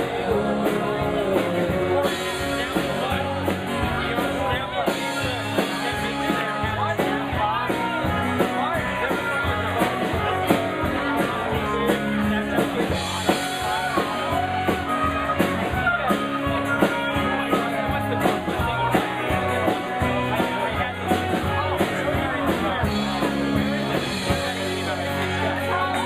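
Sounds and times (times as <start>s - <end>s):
bass guitar: 0.0s - 26.0s
drum kit beat: 0.0s - 26.0s.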